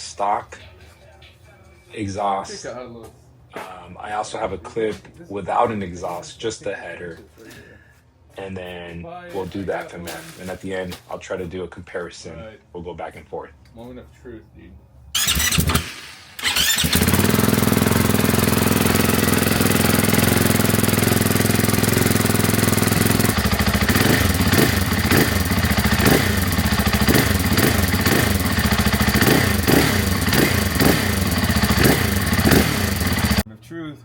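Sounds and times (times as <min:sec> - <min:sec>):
dirt bike engine revving: 0:15.2 - 0:33.4.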